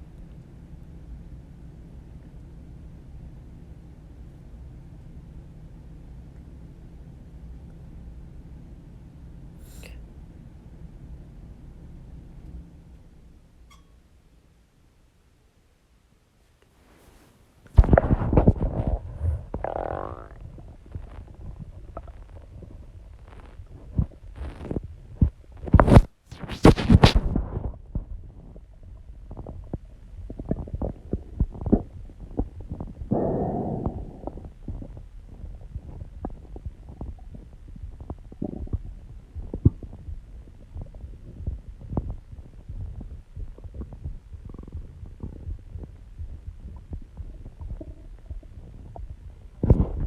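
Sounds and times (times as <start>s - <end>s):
stomach growling and gurgling: 17.7s - 50.0s.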